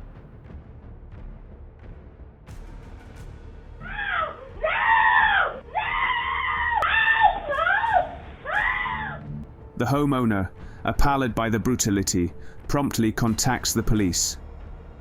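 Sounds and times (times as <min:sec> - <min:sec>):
woman screaming: 0:03.8 - 0:09.3.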